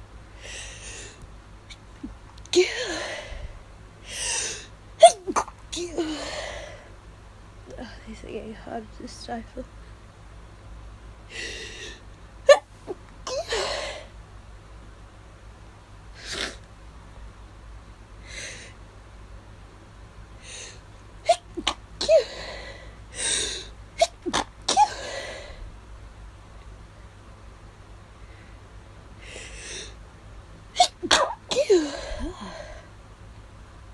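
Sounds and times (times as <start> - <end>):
person sneezing: 21.3 - 22.4, 23.2 - 25.4, 30.8 - 32.8.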